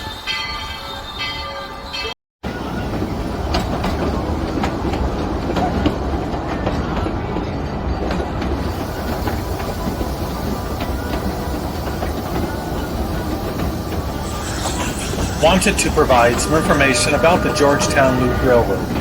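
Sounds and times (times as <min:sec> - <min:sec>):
train rumbling on rails: 0:00.0 - 0:19.0
high steady squeal: 0:11.0 - 0:19.0.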